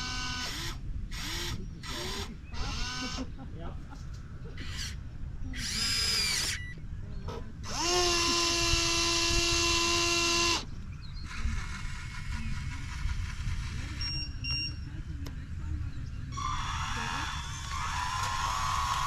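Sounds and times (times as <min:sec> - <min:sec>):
small electric motor whining: 0:00.0 - 0:03.3, 0:04.6 - 0:06.6, 0:07.6 - 0:14.0, 0:16.4 - 0:19.0.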